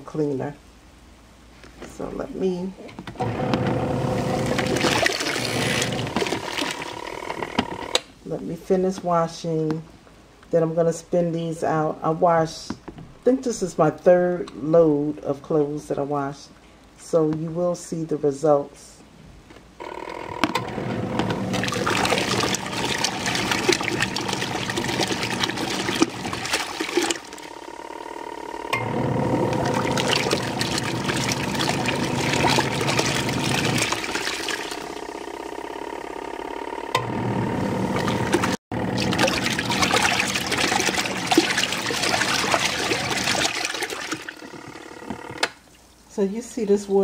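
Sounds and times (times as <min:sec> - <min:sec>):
motor hum: 0:03.1 - 0:08.0, 0:19.8 - 0:45.6
water sloshing in washing machine: 0:03.2 - 0:07.6, 0:20.5 - 0:27.8, 0:28.8 - 0:35.2, 0:37.8 - 0:45.4.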